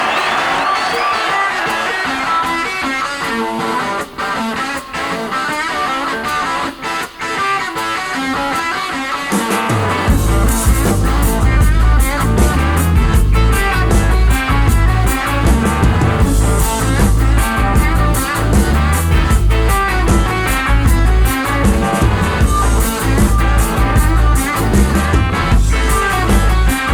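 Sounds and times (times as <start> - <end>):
electric guitar: 0.0 - 26.9
bass and drums: 9.3 - 26.9.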